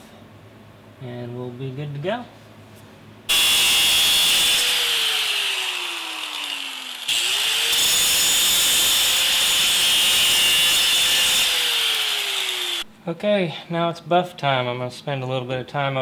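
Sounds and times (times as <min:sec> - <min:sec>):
power tool cutting bolt: 0:03.3 - 0:12.9.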